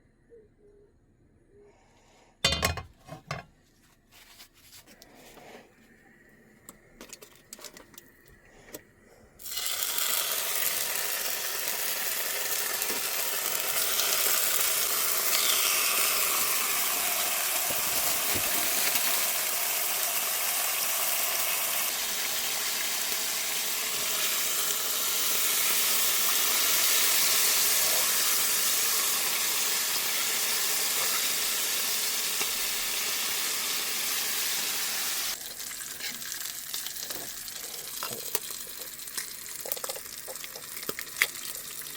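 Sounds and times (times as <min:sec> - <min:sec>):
bacon sizzling in a pan: 0:09.4 - 0:41.9.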